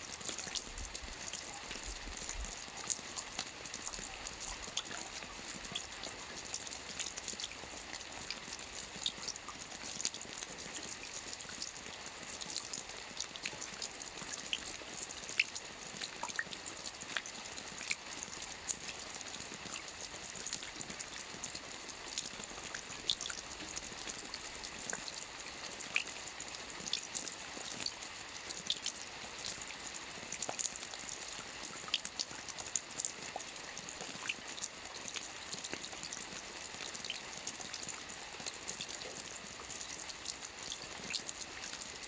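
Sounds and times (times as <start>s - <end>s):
rain hiss: 0.0s - 42.0s
raindrops ticking close by: 0.0s - 42.0s.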